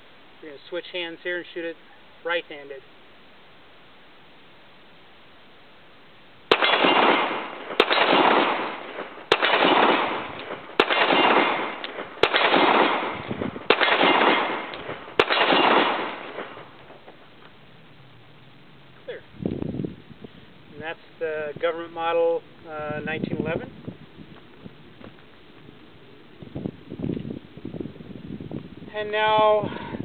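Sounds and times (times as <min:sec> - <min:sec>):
pistol shots with echo: 0:06.5 - 0:16.7.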